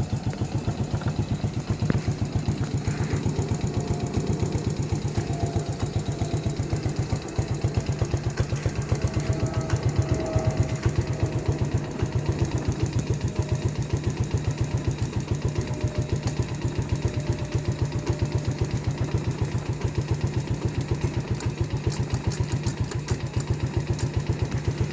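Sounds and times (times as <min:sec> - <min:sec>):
vehicle engine idling: 0:00.0 - 0:24.9.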